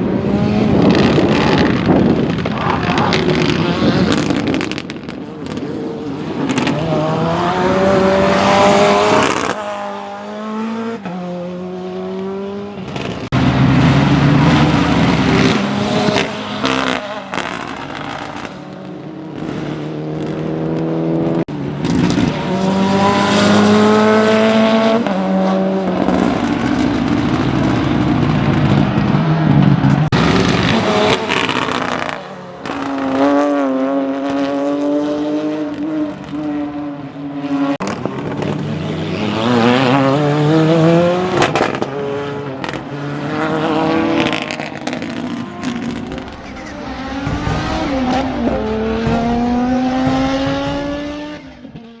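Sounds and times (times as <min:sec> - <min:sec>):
rally car engine revving hard: 0:00.0 - 0:52.0.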